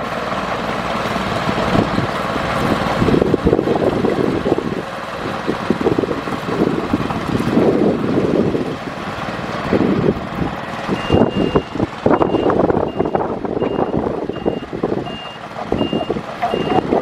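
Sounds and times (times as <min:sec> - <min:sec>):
heavy machine running with clanks: 0:00.0 - 0:17.0
reversing alarm beeping: 0:10.9 - 0:17.0.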